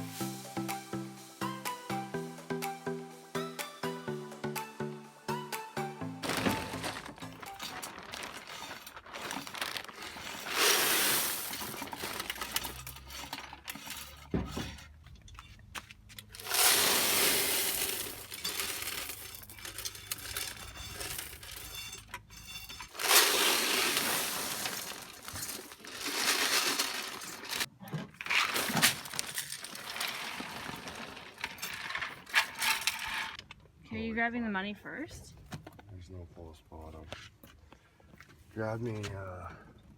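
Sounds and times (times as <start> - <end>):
candy and toys clattering into box: 6.2 - 14.9, 16.2 - 33.4.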